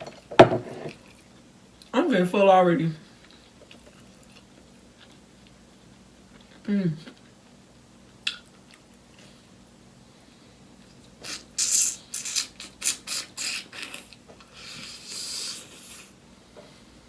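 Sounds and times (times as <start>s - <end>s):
crunchy chewing of fried chicken: 3.1s - 9.6s, 10.6s - 16.2s.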